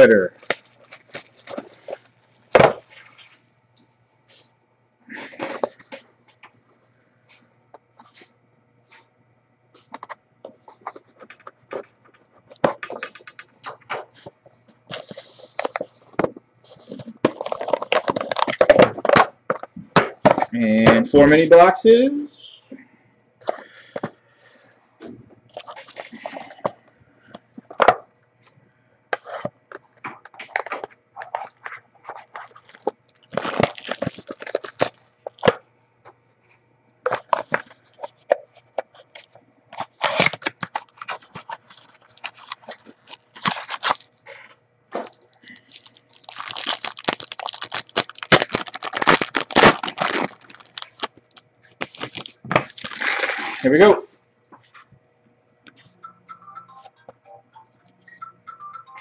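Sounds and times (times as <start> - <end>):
crinkling plastic wrapping: 0.0 - 3.4, 14.9 - 19.2, 25.5 - 26.7, 30.1 - 35.6, 39.0 - 44.1, 45.0 - 53.7
faint steady hum: 0.0 - 59.0.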